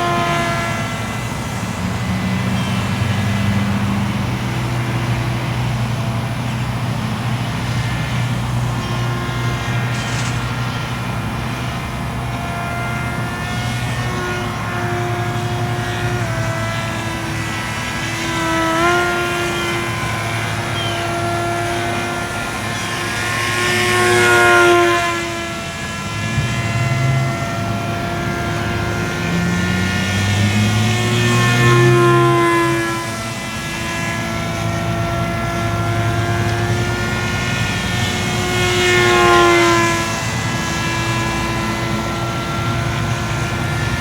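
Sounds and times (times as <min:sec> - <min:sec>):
model aircraft motor whine: 0:00.0 - 0:44.0.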